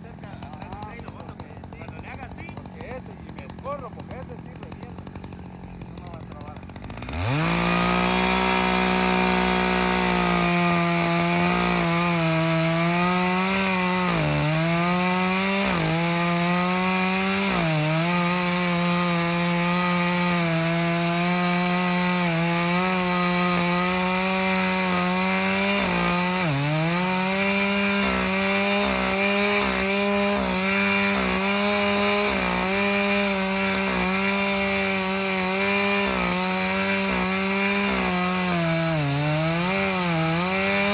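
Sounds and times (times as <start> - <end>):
chainsaw cutting tree: 0.0 - 40.9.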